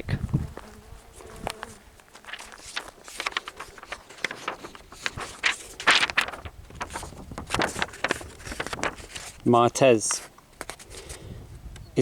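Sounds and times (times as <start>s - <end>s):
short footsteps: 0.3s - 5.8s.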